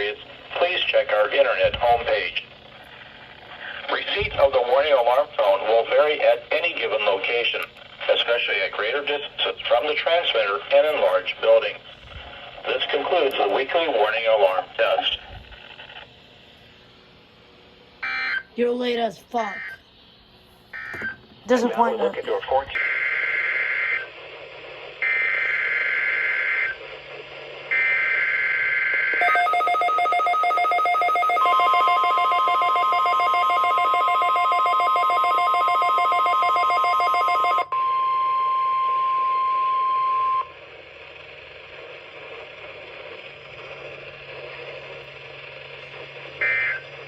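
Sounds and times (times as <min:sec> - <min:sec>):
faint radio hiss: 0:00.0 - 0:18.0
steady warning alarm tone: 0:27.7 - 0:40.5
pulsing electronic beeps: 0:29.2 - 0:37.7
rasping data bursts: 0:29.2 - 0:37.7.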